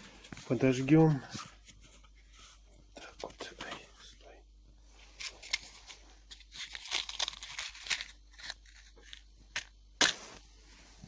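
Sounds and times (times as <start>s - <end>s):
crackling and rustling handling noises: 4.8s - 11.0s.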